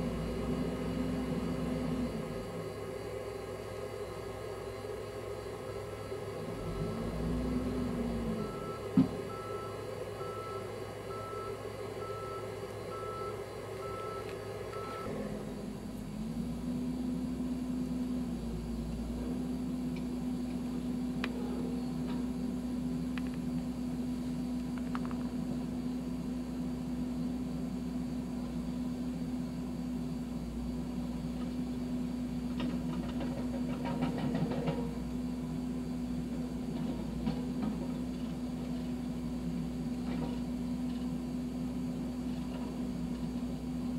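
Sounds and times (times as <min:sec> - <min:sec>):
diesel engine running: 0:00.0 - 0:43.9
reversing beeper: 0:08.4 - 0:15.1.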